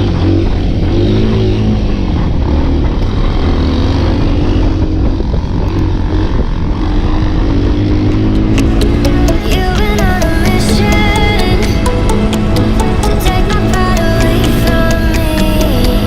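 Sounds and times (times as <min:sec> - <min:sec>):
off-road motorcycle engine running: 0:00.0 - 0:16.0.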